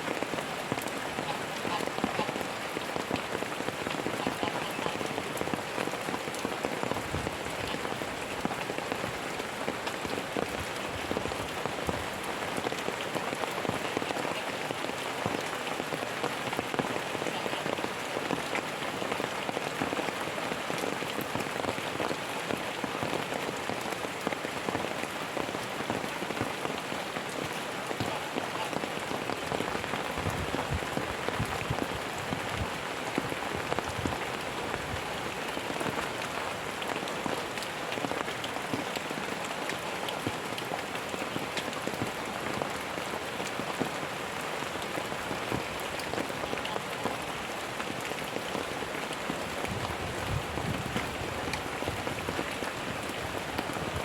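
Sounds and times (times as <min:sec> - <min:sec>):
steady rain patter: 0:00.0 - 0:54.0.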